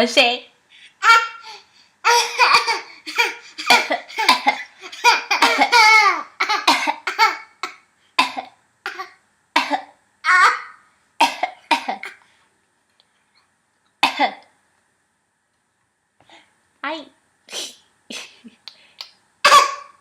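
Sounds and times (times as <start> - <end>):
baby pretend coughing: 2.1 - 12.2, 19.4 - 20.0.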